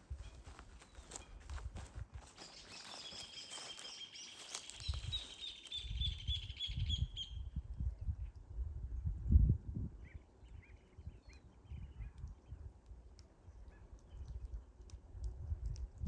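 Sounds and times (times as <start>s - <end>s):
songbird calling high notes: 2.4s - 7.5s.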